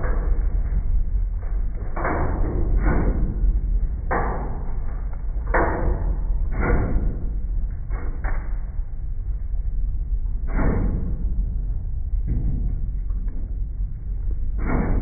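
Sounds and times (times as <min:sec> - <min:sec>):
constant deep rumble: 0:00.0 - 0:15.0
loud banging impacts: 0:14.6 - 0:15.0.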